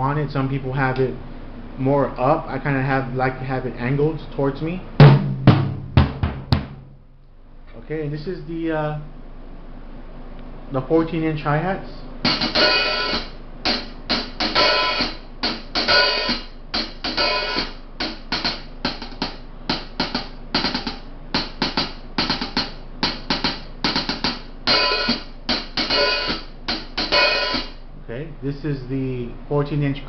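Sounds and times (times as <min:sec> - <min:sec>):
hi-hat cymbals played with drumsticks: 0:12.2 - 0:27.8.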